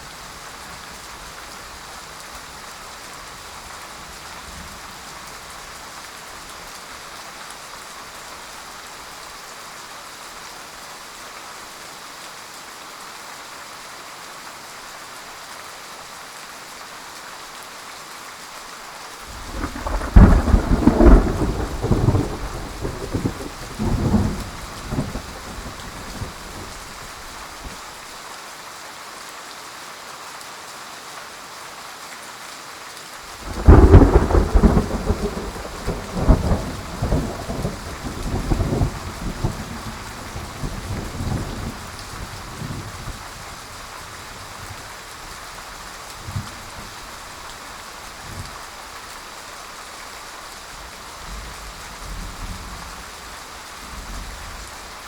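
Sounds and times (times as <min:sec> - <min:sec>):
heavy rain: 0:00.0 - 0:55.0
thunderclap rolling: 0:19.3 - 0:27.8, 0:33.4 - 0:43.2.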